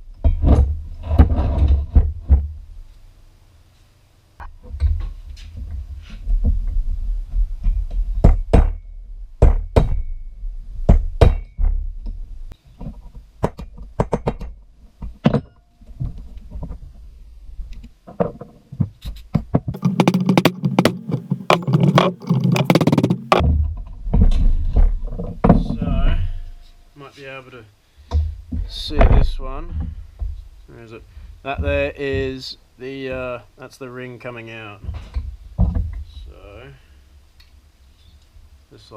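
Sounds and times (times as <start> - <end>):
hand tools clicking on metal: 19.8 - 23.4.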